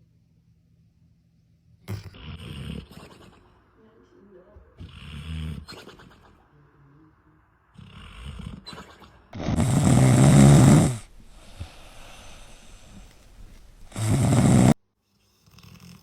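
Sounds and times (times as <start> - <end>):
loud snores: 1.9 - 3.4, 4.8 - 6.0, 7.7 - 16.0.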